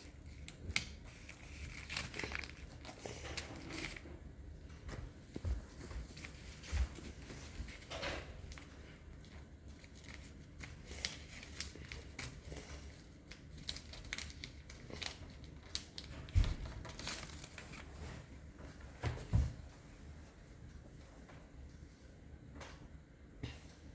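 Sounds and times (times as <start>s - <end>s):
paper crinkling while folded: 0.0s - 4.2s, 5.2s - 18.4s.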